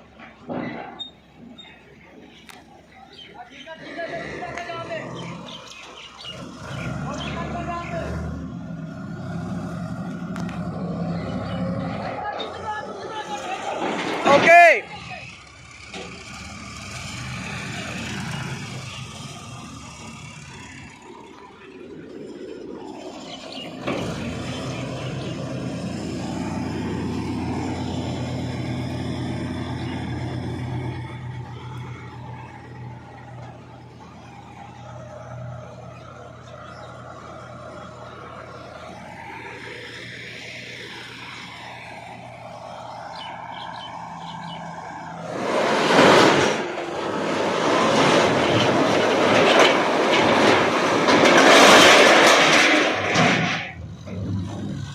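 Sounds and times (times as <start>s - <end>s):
engine running: 4.0s - 54.9s
sharp clatter: 45.3s - 54.9s.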